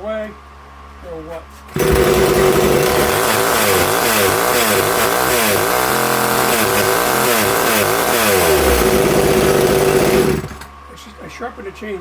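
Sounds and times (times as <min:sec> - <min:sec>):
chainsaw revving: 0:01.7 - 0:10.7.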